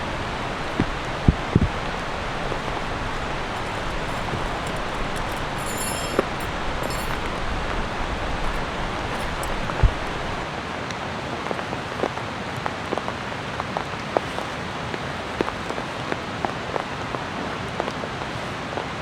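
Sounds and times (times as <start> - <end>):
heavy raindrops tapping: 0.0 - 10.4.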